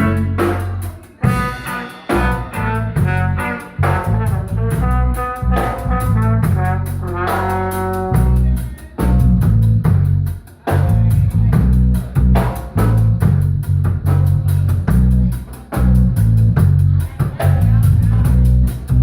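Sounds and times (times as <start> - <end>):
brass lines: 0.0 - 8.5
bass: 0.0 - 19.0
drum kit: 0.0 - 19.0.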